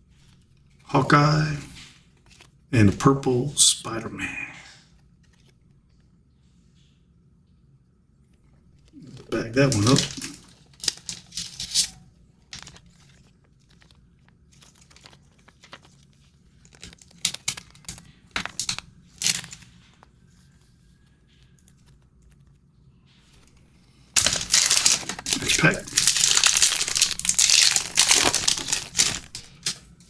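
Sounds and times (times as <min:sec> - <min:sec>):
cards being handled: 0:00.2 - 0:04.3, 0:08.8 - 0:20.7, 0:23.3 - 0:30.0
card wrapper crinkling and tearing: 0:08.9 - 0:12.0, 0:12.6 - 0:20.0, 0:24.2 - 0:29.9.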